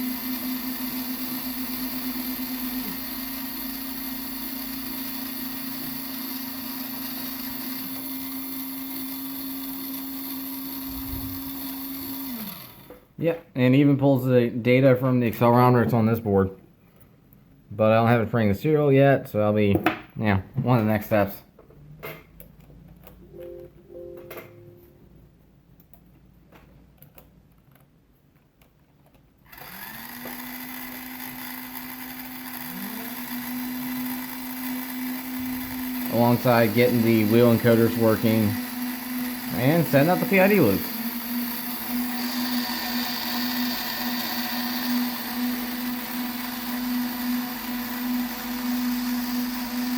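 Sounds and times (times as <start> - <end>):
small gear motors whirring: 0.0 - 13.0, 29.4 - 49.9.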